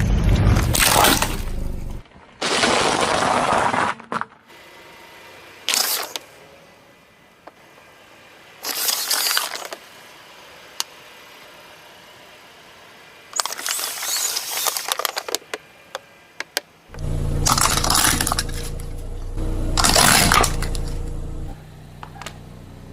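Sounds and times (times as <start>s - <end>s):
low steady hum: 16.9s - 22.9s.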